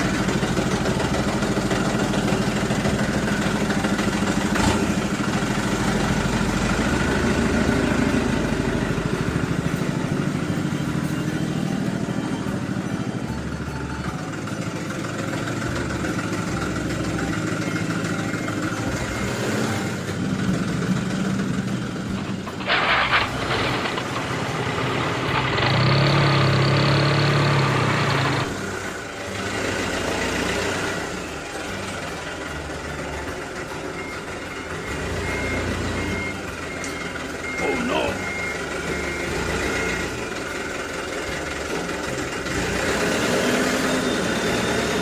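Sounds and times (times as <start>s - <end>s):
truck engine running: 0.0s - 45.0s
clatter: 20.4s - 29.4s.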